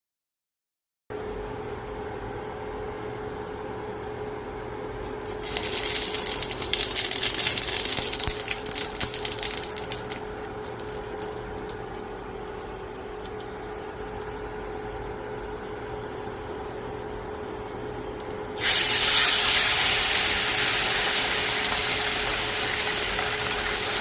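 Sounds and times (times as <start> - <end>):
steady background hum: 1.1 - 24.0
fish crackling in hot oil: 5.2 - 16.1, 18.2 - 24.0.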